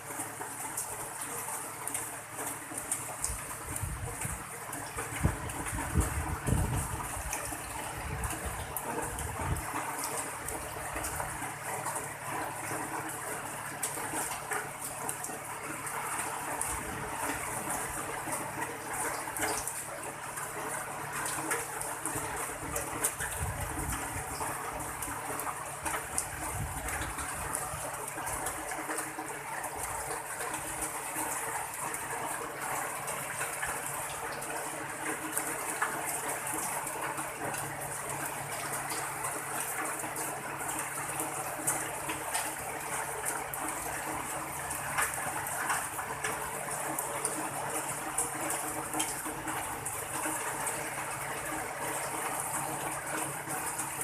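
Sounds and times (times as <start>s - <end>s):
rain falling with drop ticks: 0.0s - 54.0s.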